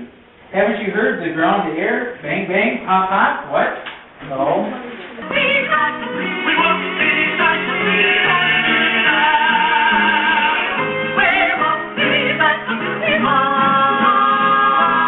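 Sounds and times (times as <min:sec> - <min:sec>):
musical accompaniment: 0:05.1 - 0:15.0.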